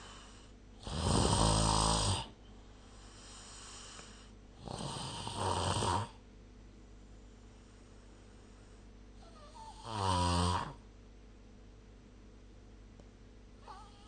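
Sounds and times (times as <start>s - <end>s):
person snoring: 0.0s - 2.4s, 3.0s - 6.2s, 9.2s - 10.8s.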